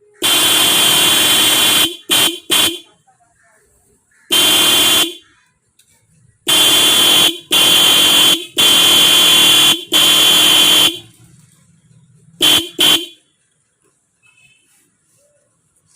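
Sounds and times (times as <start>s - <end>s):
car horn blasts: 0.0s - 3.0s, 4.3s - 5.3s, 6.5s - 11.2s, 12.4s - 13.2s.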